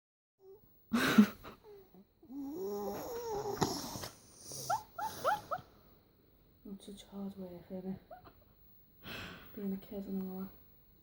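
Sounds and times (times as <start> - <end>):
boy snoring: 1.6 - 5.4.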